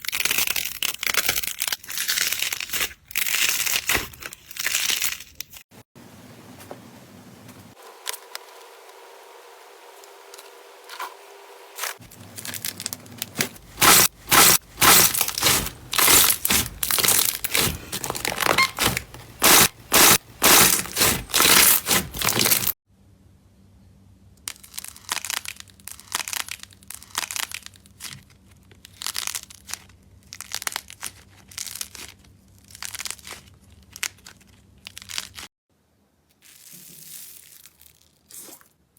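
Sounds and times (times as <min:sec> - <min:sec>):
slime crackling and popping: 0:12.4 - 0:22.8, 0:24.5 - 0:35.5.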